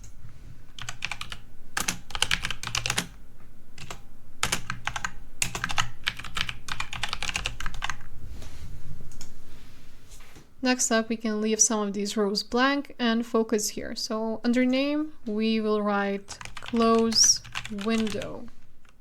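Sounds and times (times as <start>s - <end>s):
typing on a computer keyboard: 0.8s - 3.2s, 3.8s - 8.0s, 16.3s - 19.0s.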